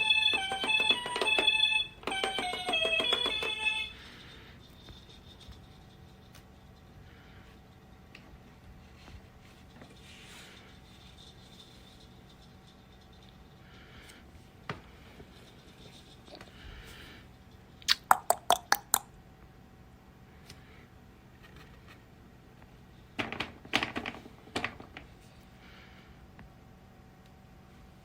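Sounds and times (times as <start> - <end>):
sharp clicks or taps: 17.9 - 19.1.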